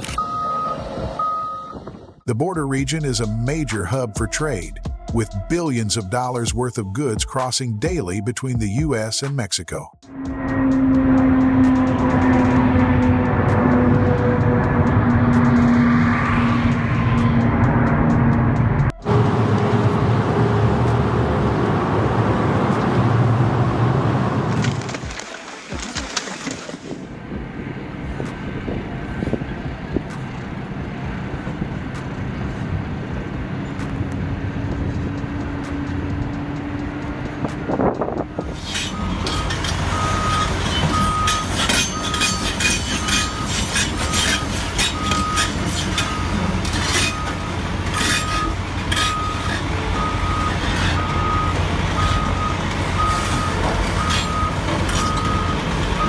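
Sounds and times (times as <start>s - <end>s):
reversing alarm beeping: 0.1s - 1.9s, 38.8s - 56.0s
heavy vehicle engine running: 10.0s - 25.2s, 27.1s - 56.0s.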